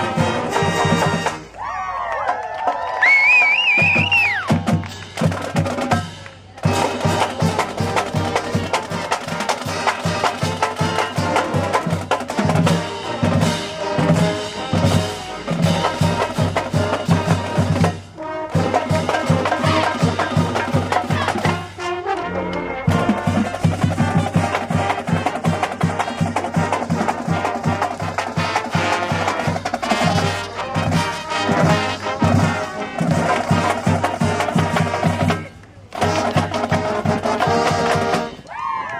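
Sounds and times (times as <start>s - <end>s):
fast steady drumbeat: 0.0s - 1.5s, 3.5s - 21.8s, 22.9s - 38.4s
marching band brass: 0.0s - 38.8s.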